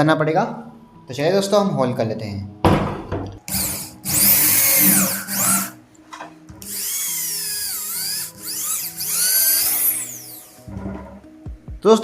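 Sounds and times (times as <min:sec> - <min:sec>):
electric drill boring plastic: 0:03.5 - 0:05.8, 0:06.6 - 0:10.7.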